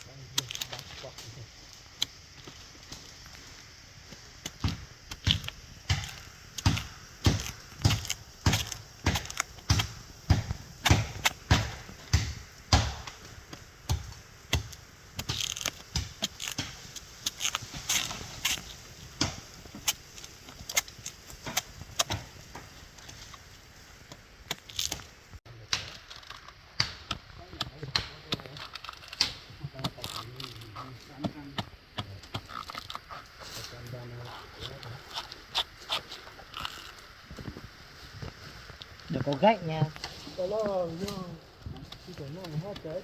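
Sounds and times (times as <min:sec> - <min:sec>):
stems cracking and rustling: 0:00.0 - 0:43.0
chopping into plant stems: 0:04.4 - 0:23.4, 0:24.0 - 0:36.9.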